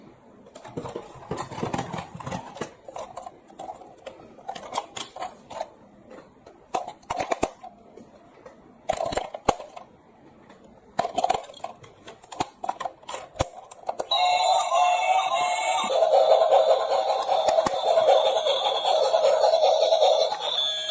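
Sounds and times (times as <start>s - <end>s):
toys clicking and rustling: 0.4s - 9.9s, 10.5s - 20.9s
toy tune: 14.0s - 20.9s.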